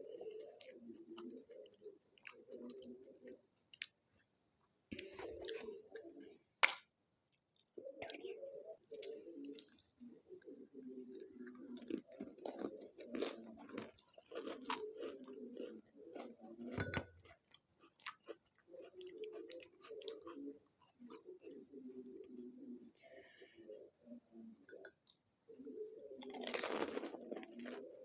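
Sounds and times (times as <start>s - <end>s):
crisp shells crunching and chewing: 11.7s - 21.5s, 26.2s - 27.8s.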